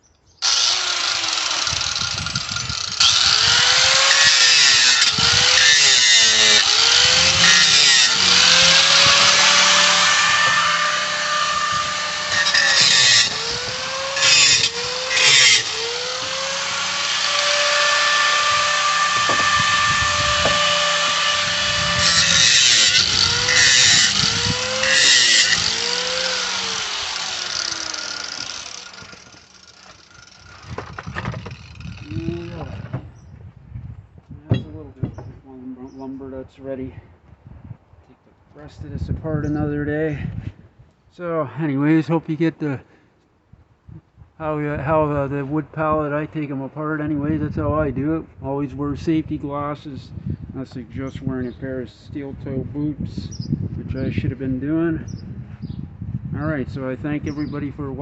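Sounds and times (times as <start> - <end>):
power tool cutting into nails: 0.4 - 32.8.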